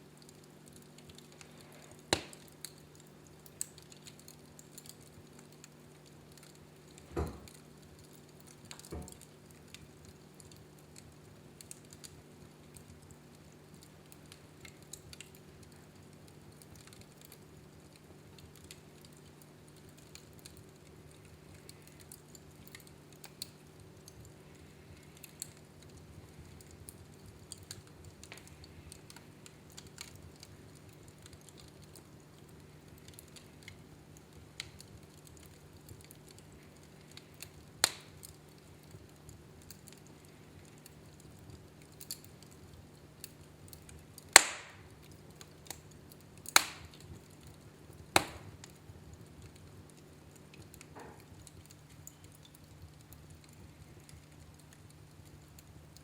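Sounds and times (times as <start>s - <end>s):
wood fire crackling: 0.0s - 56.0s
loud fire pops: 1.1s - 3.8s, 6.9s - 9.9s, 37.1s - 38.3s, 43.2s - 45.8s, 46.4s - 49.1s.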